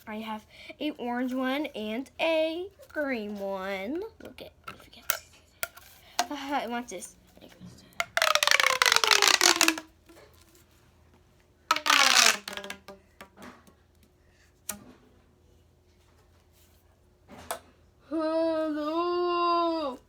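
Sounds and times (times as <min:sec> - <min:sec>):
pop tube rasping zip: 0:08.0 - 0:09.9, 0:11.7 - 0:12.9.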